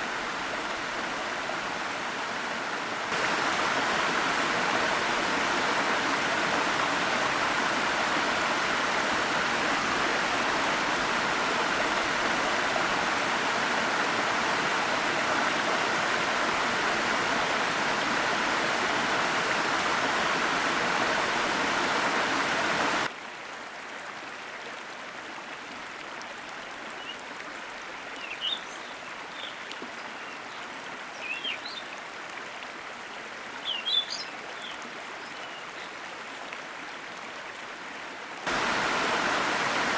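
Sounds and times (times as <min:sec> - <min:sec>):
waterfall rushing: 0:00.0 - 0:23.1, 0:38.4 - 0:39.9
softer flow of water: 0:00.0 - 0:39.9.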